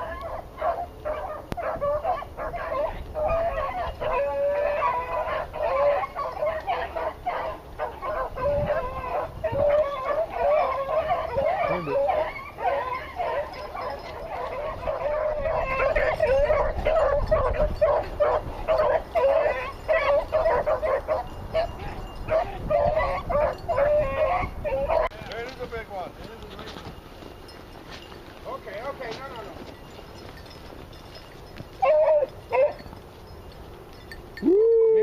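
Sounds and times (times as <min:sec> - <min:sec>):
dogs yipping and baying: 0:00.0 - 0:25.1, 0:29.6 - 0:34.2.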